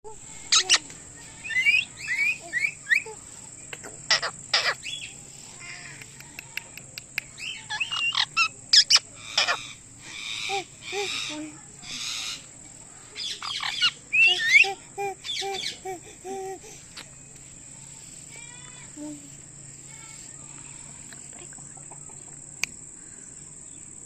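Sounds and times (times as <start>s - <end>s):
parakeet shrill calls: 4.1s - 5.1s, 7.4s - 12.4s, 13.2s - 15.4s.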